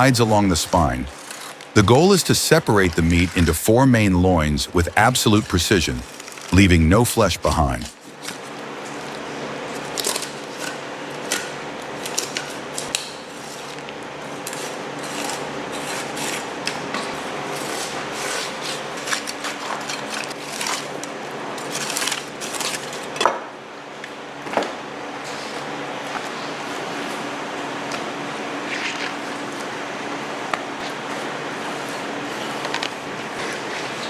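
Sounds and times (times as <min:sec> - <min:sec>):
steady low hum: 0:00.0 - 0:08.0.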